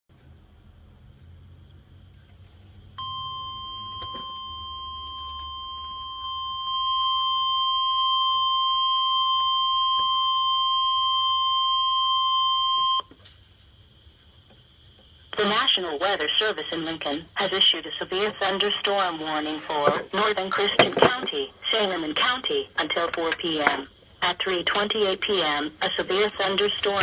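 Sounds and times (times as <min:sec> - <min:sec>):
piercing electronic alarm tone: 0:03.0 - 0:13.1.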